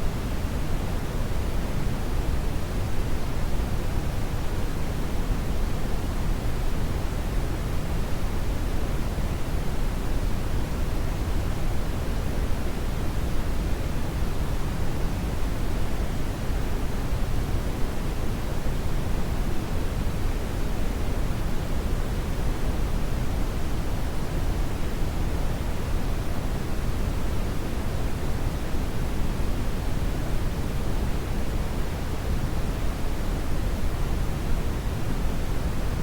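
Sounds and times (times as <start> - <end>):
brown noise hiss: 0.0 - 36.0.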